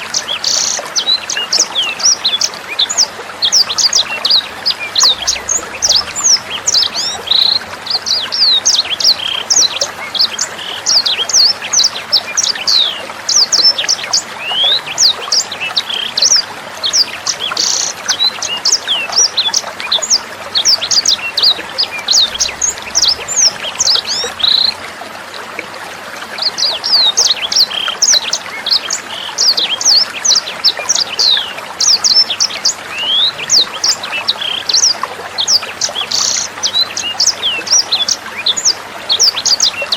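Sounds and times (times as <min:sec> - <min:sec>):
songbird chirping and twittering: 0:00.0 - 0:24.9, 0:26.4 - 0:39.9
trickling water: 0:00.0 - 0:39.9.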